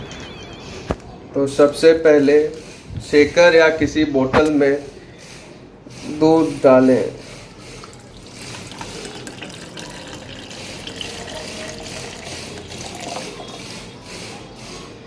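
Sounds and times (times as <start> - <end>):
milk pouring: 7.8 - 13.8.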